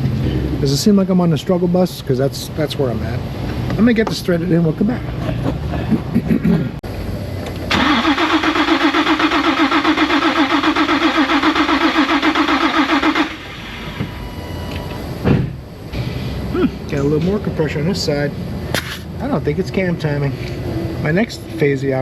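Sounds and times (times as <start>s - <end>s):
car engine cranking on starter: 7.7s - 13.8s.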